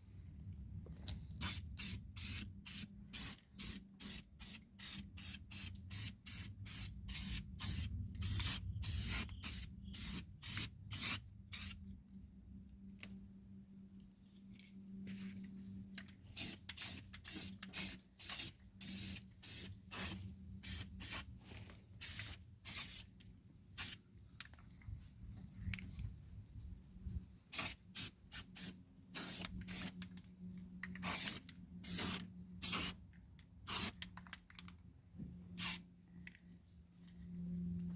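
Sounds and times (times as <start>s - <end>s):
aerosol spray hissing bursts: 1.4s - 11.8s, 16.4s - 21.3s, 22.0s - 23.0s, 27.5s - 30.0s, 31.0s - 33.0s, 33.7s - 34.0s, 35.6s - 35.8s.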